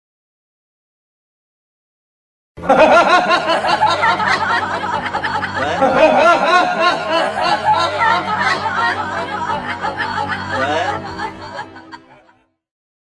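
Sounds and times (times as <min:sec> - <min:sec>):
man laughing: 0:02.6 - 0:12.4.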